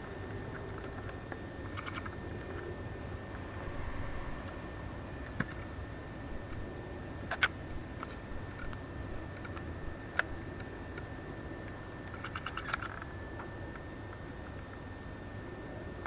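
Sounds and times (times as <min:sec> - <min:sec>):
faint thin whine: 0:00.0 - 0:16.0.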